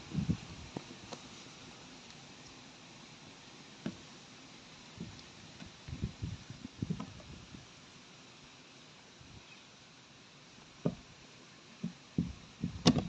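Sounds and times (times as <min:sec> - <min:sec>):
faint steady hiss: 0:00.0 - 0:13.0
dull knocks and thumps: 0:10.8 - 0:11.1, 0:11.8 - 0:13.0.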